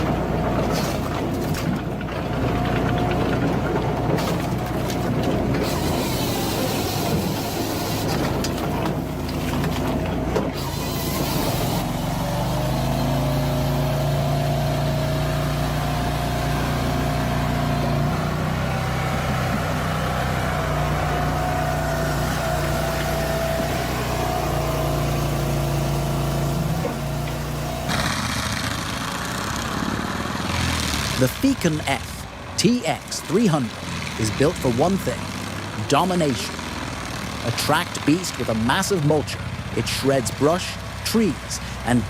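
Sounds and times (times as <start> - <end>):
clattering mechanical knocking: 0.0 - 11.6
heavy machine engine running: 0.0 - 42.0.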